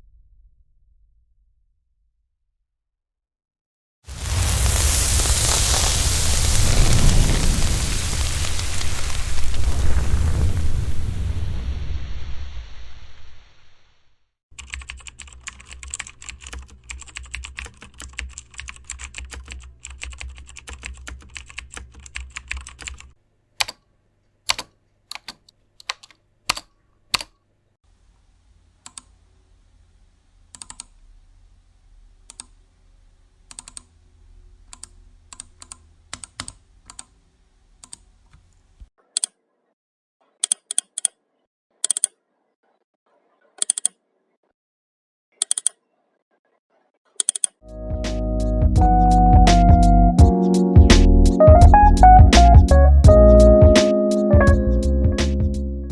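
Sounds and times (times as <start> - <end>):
computer keyboard typing: 14.6 - 23.8, 24.5 - 27.3.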